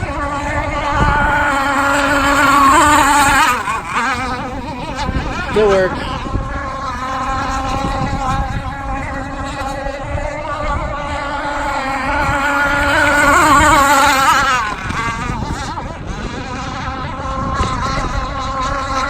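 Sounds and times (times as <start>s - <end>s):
racing boat engine: 0.0s - 19.0s.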